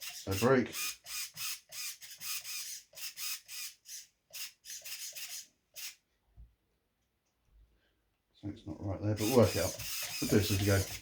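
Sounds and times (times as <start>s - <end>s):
servo buzzing in bursts: 9.2s - 11.0s.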